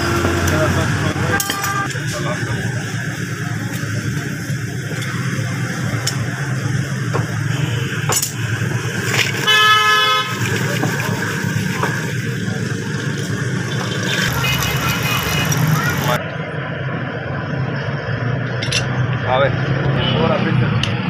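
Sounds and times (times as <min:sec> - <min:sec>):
vehicle horn honking: 0:00.0 - 0:02.0, 0:07.4 - 0:08.1, 0:09.4 - 0:12.0.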